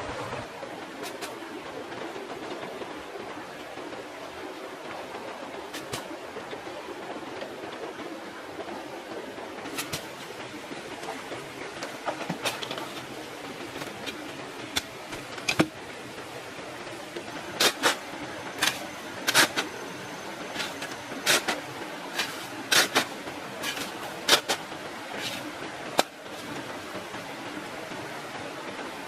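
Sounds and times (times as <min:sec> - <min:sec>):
steady background hiss: 0:00.0 - 0:29.0
sharp knocks and scrapes: 0:09.7 - 0:10.3, 0:11.0 - 0:15.7, 0:17.6 - 0:19.7, 0:20.5 - 0:24.6.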